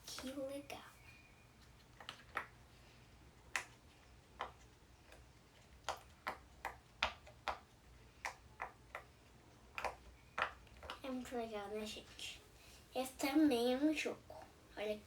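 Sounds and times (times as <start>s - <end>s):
fidget toy popping clicks: 5.8s - 11.0s.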